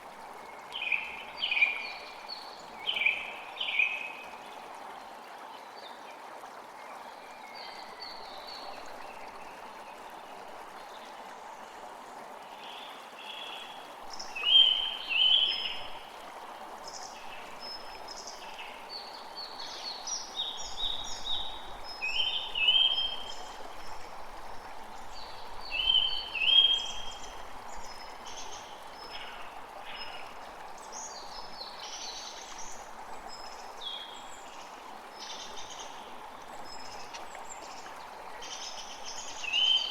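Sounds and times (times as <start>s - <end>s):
rushing wind or water: 0.0s - 39.9s.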